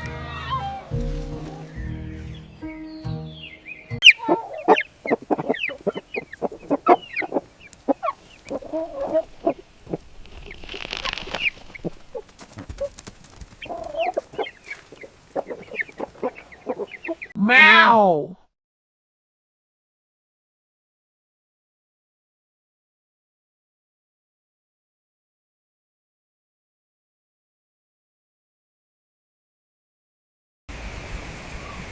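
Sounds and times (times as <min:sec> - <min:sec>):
chickens clucking: 0:04.0 - 0:17.4
rustling: 0:05.1 - 0:17.1.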